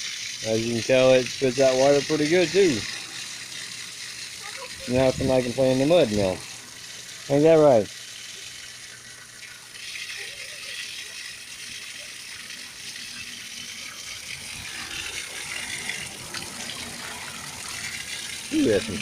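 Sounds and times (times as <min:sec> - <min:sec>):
drain water splashing on ground: 0:00.0 - 0:19.0
washing machine running: 0:00.0 - 0:19.0.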